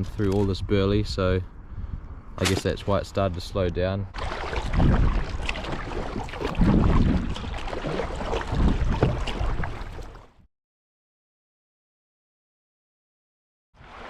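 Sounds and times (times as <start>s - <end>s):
water sloshing against kayak: 4.1s - 10.4s
wind rumble on microphone: 4.5s - 10.1s.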